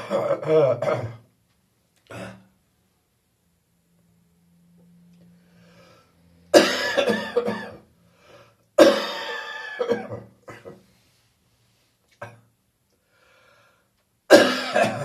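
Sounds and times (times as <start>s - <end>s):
person coughing: 0.0s - 1.3s, 6.6s - 7.8s, 8.8s - 10.8s, 14.3s - 15.0s
faint breath: 5.2s - 6.5s, 8.0s - 8.7s, 13.0s - 14.0s.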